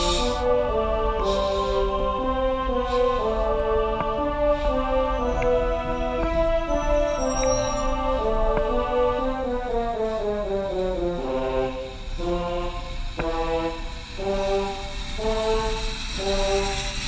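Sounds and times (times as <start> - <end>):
slow brass melody: 0.0 - 17.0.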